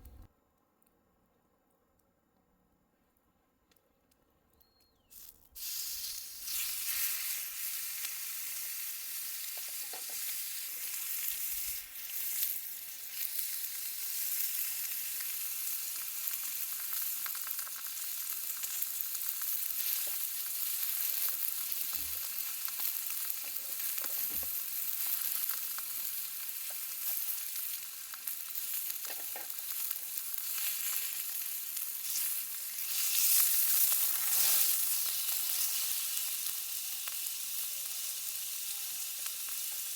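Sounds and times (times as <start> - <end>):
meat sizzling on a hot griddle: 5.1 - 39.9.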